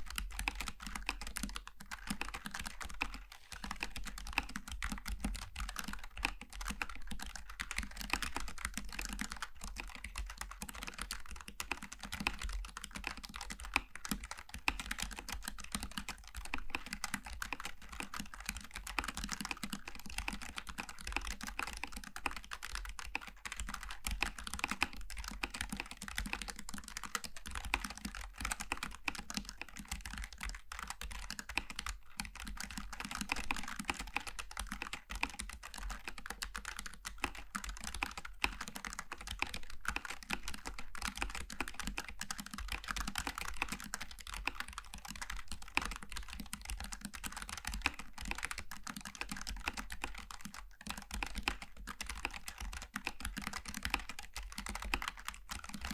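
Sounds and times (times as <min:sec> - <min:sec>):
fast mechanical keyboard typing: 0:00.0 - 0:55.9.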